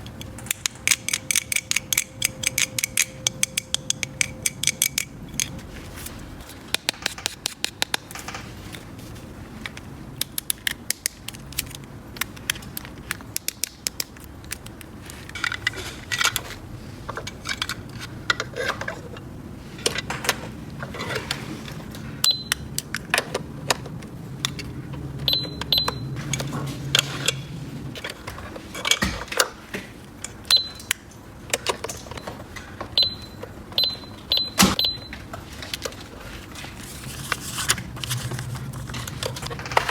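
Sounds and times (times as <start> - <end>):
plastic toy pieces clicking: 0.3 - 5.6, 10.2 - 15.6.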